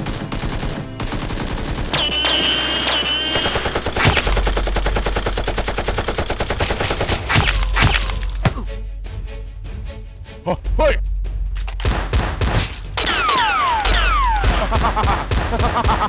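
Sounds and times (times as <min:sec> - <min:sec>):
rapid automatic gunfire: 0:00.0 - 0:08.1
loud single gunshots: 0:06.6 - 0:08.5.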